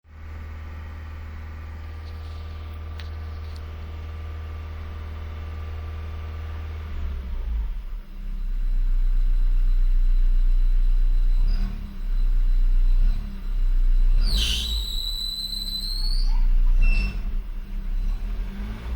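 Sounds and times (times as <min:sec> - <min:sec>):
engine rumble: 0:00.0 - 0:18.9
belt squeal: 0:14.2 - 0:17.4.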